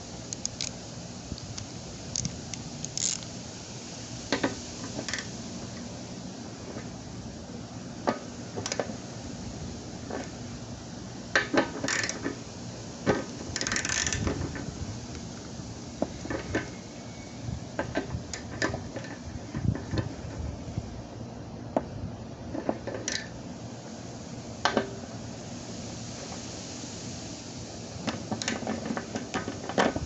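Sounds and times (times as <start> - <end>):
ratchet wrench clicking: 0.3 - 0.8, 1.5 - 3.3, 13.6 - 14.2.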